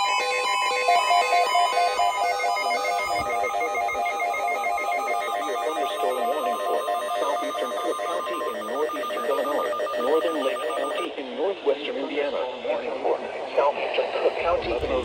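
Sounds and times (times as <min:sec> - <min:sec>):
steady warning alarm tone: 0:00.0 - 0:11.1.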